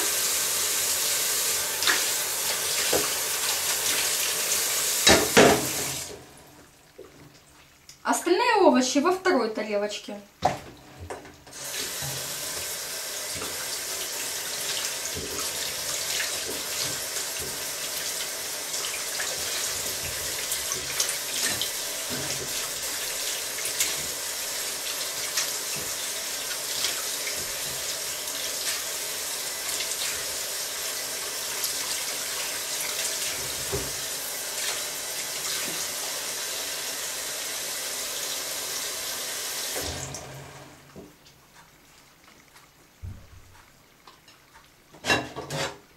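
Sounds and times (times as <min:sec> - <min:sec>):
tap running into a sink: 0:01.8 - 0:04.2, 0:05.0 - 0:06.2, 0:10.4 - 0:24.3, 0:25.0 - 0:28.9, 0:32.9 - 0:34.0.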